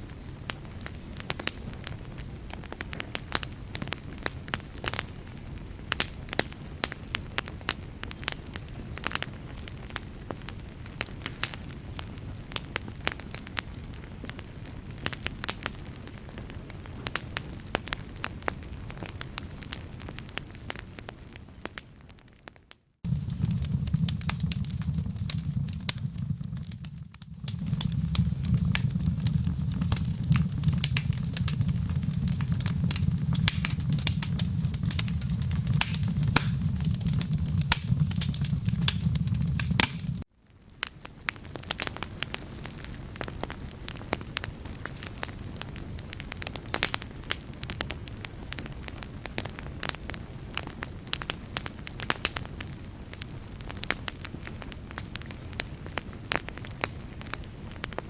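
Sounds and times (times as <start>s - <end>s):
wood fire crackling: 0.0s - 58.0s
loud deep rumble: 23.1s - 40.2s.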